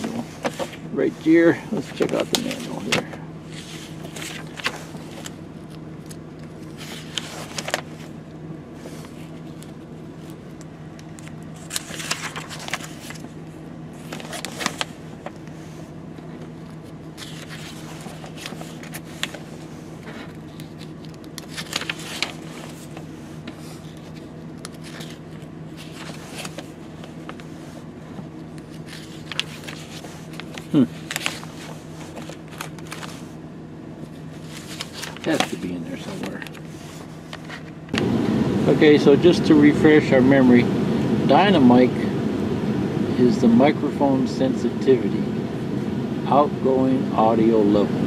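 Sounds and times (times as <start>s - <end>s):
paper pages rustling: 0.0s - 33.4s, 34.0s - 38.1s
low hum: 1.6s - 48.0s.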